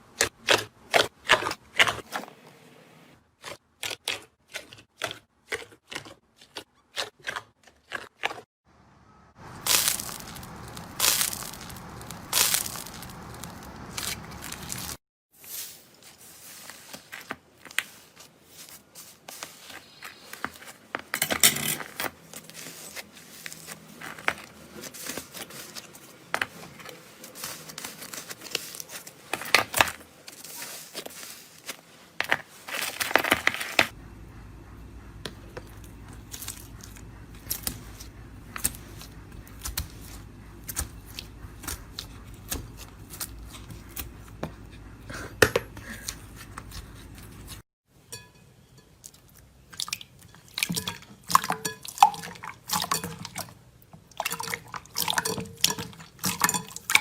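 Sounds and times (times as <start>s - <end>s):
slime crackling and popping: 9.4s - 15.0s.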